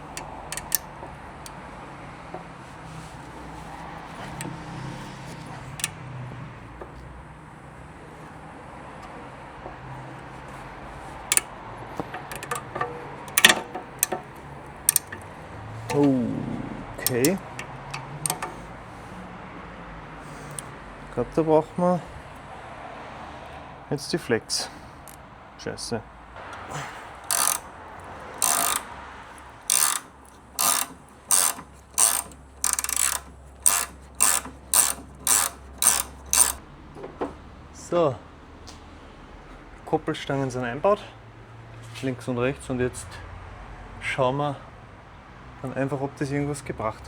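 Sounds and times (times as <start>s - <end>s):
metal tools clicking and tapping: 0.0s - 2.6s, 5.2s - 6.0s, 11.3s - 18.8s, 26.5s - 36.6s.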